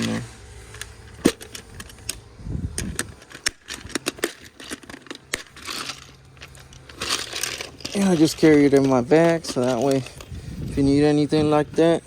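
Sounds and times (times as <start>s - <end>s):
plastic box clicking and rattling: 2.8s - 10.3s
screws being picked through: 2.8s - 11.0s.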